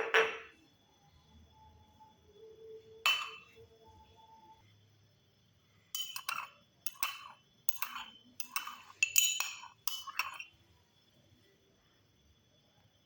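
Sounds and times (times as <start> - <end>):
kitchenware clinking: 3.0 - 3.6, 5.9 - 10.6.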